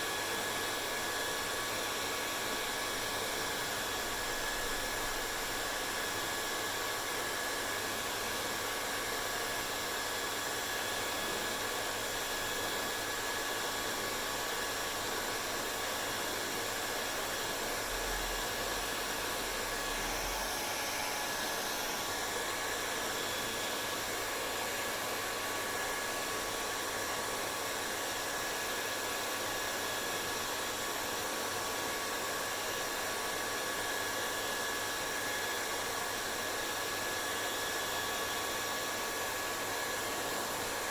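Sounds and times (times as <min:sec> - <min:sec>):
hair dryer blowing air: 0:00.0 - 0:40.9.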